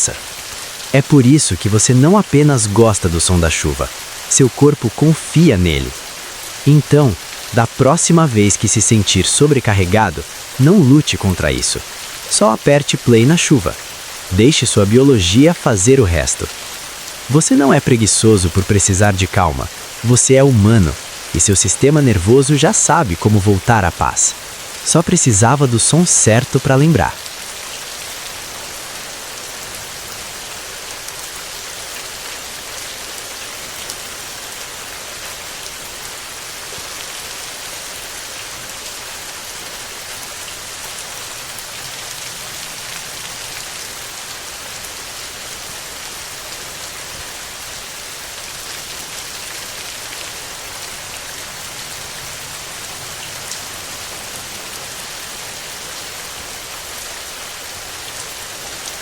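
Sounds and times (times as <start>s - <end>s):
steady rain hiss: 0.0s - 59.0s.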